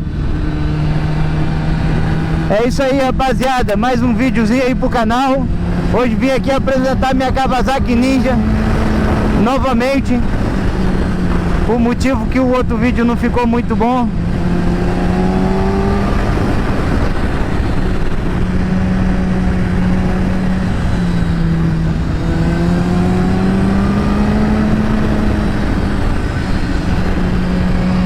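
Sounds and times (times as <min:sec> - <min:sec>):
heavy rushing noise: 0:00.0 - 0:28.0
motorcycle engine riding: 0:00.0 - 0:28.0.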